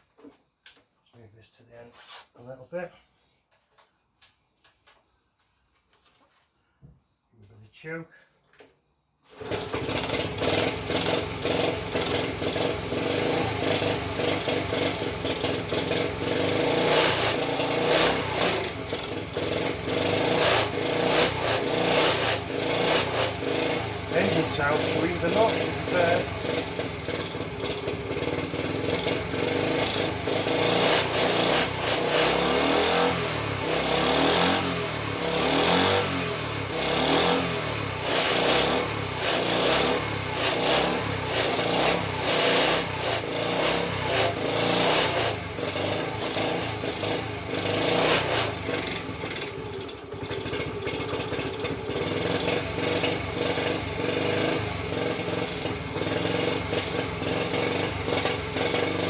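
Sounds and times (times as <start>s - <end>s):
motorcycle engine revving: 9.3s - 59.0s.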